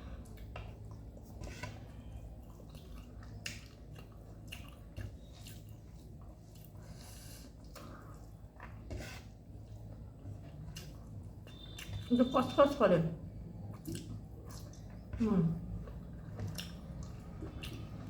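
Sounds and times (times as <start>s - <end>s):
soft wet chewing sounds: 0.0s - 12.4s, 13.3s - 18.0s
sharp crunches of chewing: 15.9s - 18.0s.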